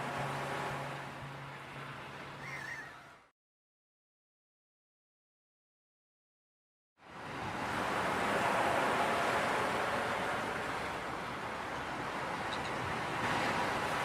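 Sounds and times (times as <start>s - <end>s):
ocean waves washing: 7.1s - 14.0s.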